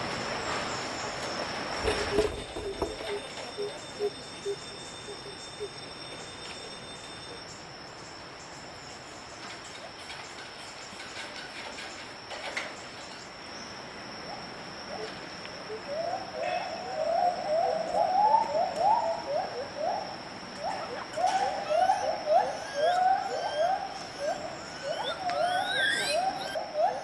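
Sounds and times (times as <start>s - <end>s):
high-pitched insect drone: 1.7s - 27.0s
gibbons hooting: 1.8s - 7.4s, 15.6s - 27.0s.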